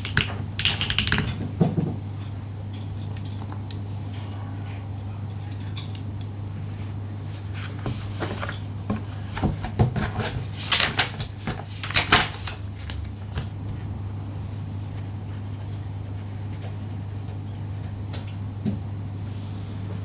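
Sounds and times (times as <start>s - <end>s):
mechanical keyboard typing: 0.0s - 1.4s
steady low hum: 0.0s - 10.6s, 12.5s - 20.0s.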